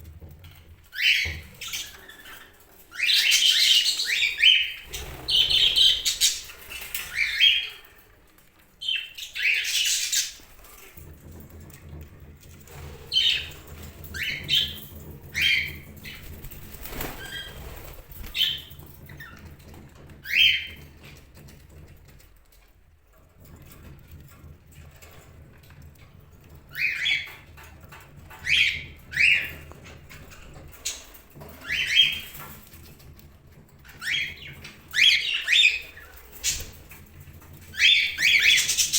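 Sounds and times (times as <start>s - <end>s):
wings flapping: 0.0s - 8.2s, 8.8s - 22.3s, 26.7s - 38.9s
budgerigars chirping: 1.0s - 7.8s, 8.8s - 10.4s, 37.8s - 38.9s.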